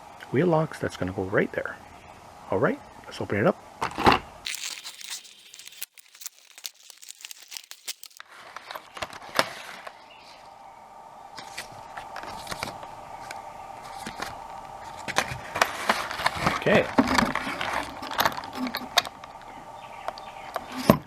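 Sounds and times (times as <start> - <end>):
packaging crinkling and tearing: 4.5 - 8.2
small irregular clicks: 4.5 - 8.2.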